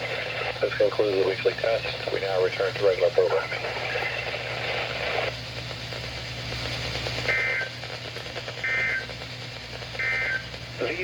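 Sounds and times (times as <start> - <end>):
radio hiss and hum: 0.0 - 11.0
warbling digital data bursts: 8.6 - 9.2.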